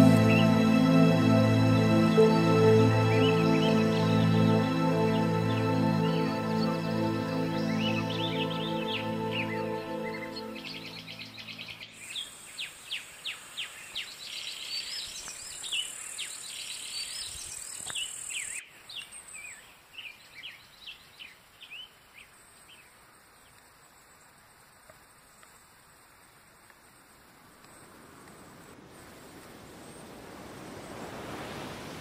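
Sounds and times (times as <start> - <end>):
background music: 0.0 - 11.8
small birds chirping: 3.1 - 25.8.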